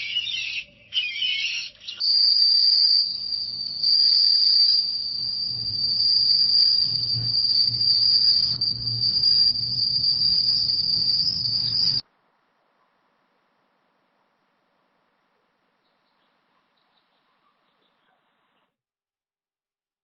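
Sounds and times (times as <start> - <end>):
high-pitched insect trill: 1.2 - 12.0
soft low pulses: 3.1 - 12.0.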